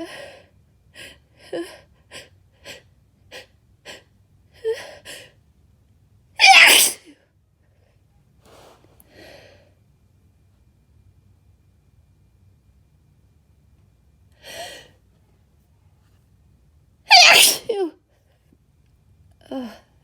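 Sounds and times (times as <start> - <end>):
woman sneezing loudly: 6.4 - 7.1, 17.1 - 17.9.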